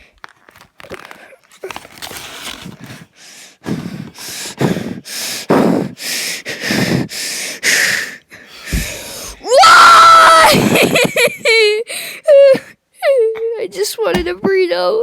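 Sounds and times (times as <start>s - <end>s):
man sobbing: 9.8s - 13.4s.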